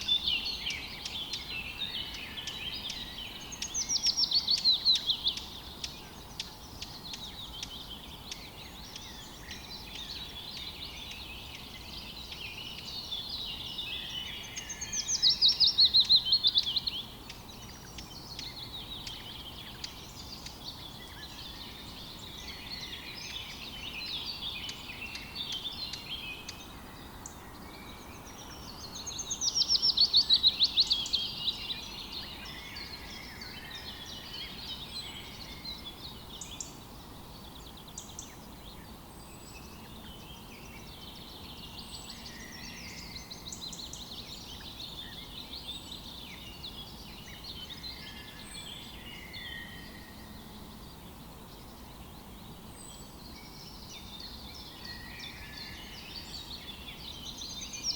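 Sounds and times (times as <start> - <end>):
soft bird chirping: 0.0 - 57.9.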